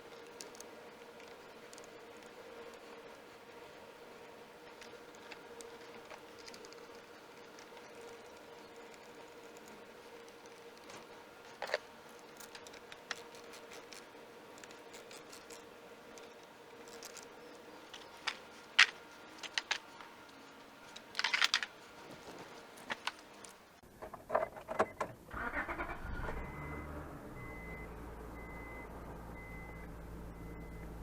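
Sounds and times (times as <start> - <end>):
car engine cranking and running: 25.2 - 31.0.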